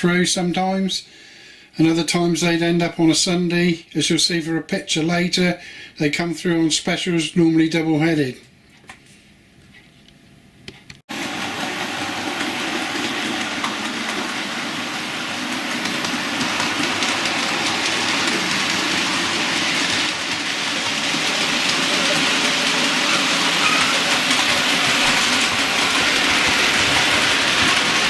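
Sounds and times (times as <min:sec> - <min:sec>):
model train whirring on track: 0:11.1 - 0:28.0.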